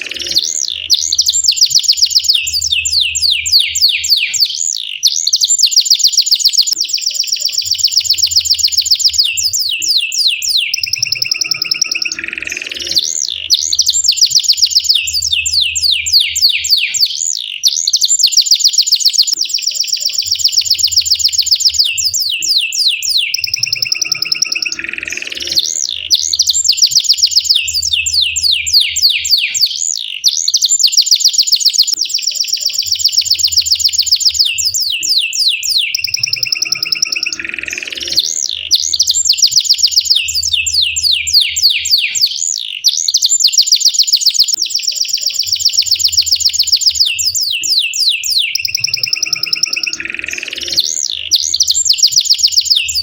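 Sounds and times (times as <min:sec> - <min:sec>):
canary singing trills: 0:00.0 - 0:53.0.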